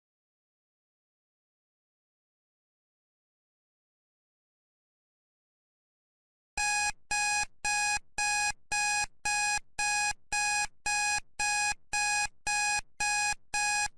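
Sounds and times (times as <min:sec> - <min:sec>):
timer alarm electronic beeps: 0:06.6 - 0:13.9.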